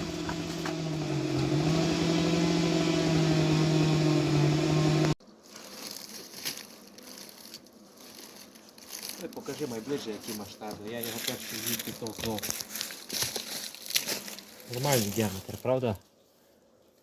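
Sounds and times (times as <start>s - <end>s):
chainsaw running at high revs: 0.0s - 5.2s.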